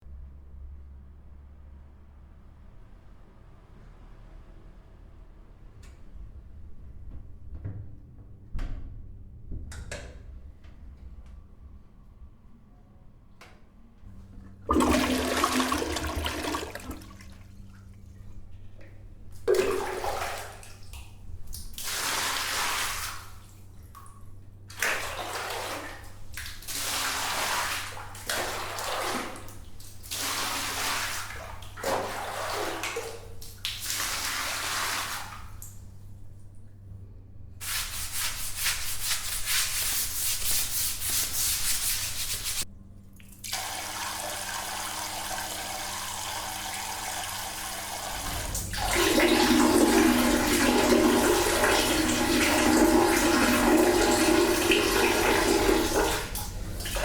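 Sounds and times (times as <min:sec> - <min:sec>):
low steady hum: 0:04.8 - 0:39.4, 0:42.4 - 0:57.0
water running: 0:14.1 - 0:35.9, 0:37.6 - 0:57.0.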